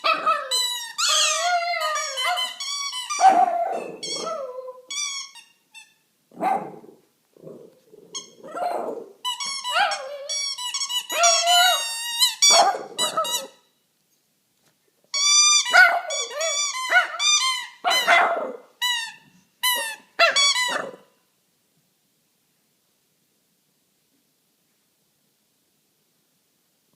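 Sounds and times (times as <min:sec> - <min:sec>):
dog barking: 0:00.0 - 0:00.5, 0:02.2 - 0:02.5, 0:03.2 - 0:04.0, 0:06.4 - 0:06.8, 0:12.4 - 0:13.5, 0:15.7 - 0:17.2, 0:17.8 - 0:18.7, 0:19.8 - 0:21.1
dog whining and yelping: 0:00.0 - 0:06.6, 0:07.6 - 0:13.6, 0:15.6 - 0:21.1.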